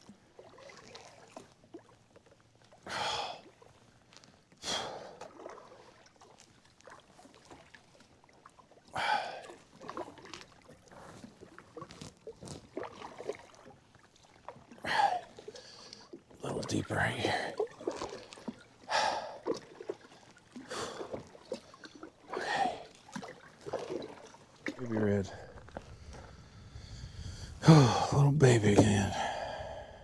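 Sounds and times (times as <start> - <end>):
person breathing hard: 25.8 - 28.2, 28.8 - 30.0
paddle knocks and splashes: 27.7 - 29.5.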